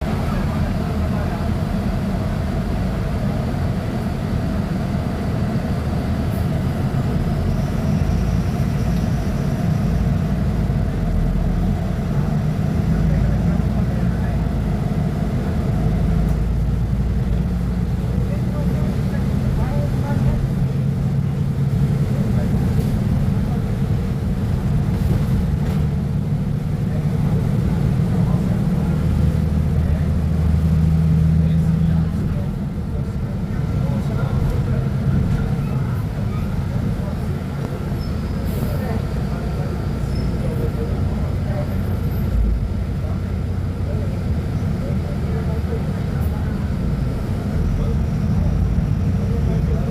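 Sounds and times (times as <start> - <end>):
bus diesel engine rumbling: 0.0 - 49.9.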